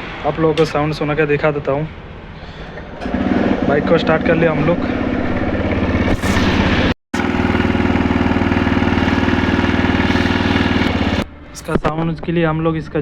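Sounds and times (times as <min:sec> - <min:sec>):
motorcycle engine idling with rattle: 0:02.6 - 0:06.2, 0:07.2 - 0:11.2.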